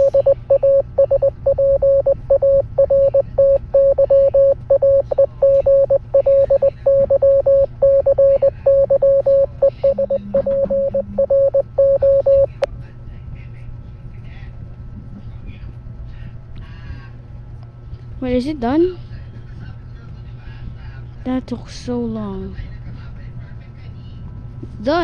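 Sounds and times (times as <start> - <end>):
morse code beeps: 0.0 - 12.5.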